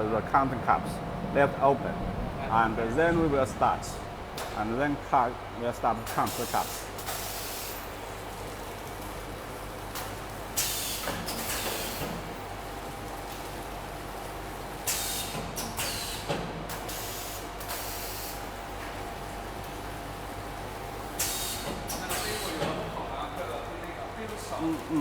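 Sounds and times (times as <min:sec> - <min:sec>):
machine humming: 0:00.0 - 0:07.0.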